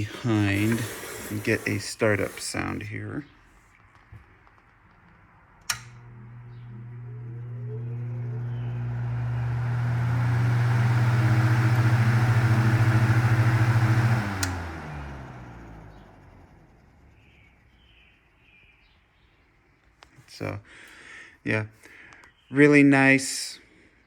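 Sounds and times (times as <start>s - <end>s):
fan motor hum: 0.0s - 3.0s, 5.6s - 17.8s
fan switch click: 5.6s - 6.0s, 14.4s - 14.7s.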